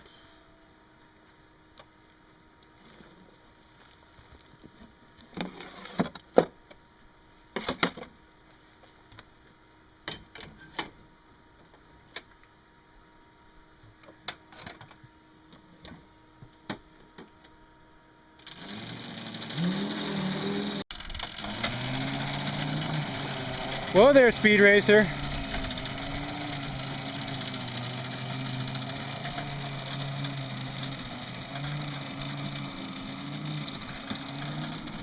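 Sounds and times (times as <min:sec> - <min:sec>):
bulldozer engine running: 0:18.5 - 0:35.0.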